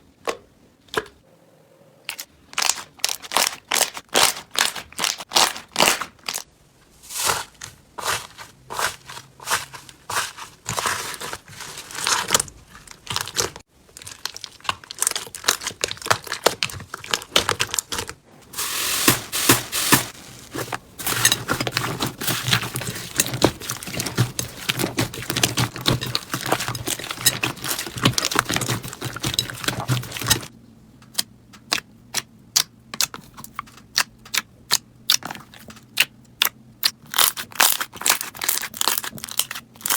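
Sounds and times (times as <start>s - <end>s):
slime crackling and popping: 12.9s - 18.2s.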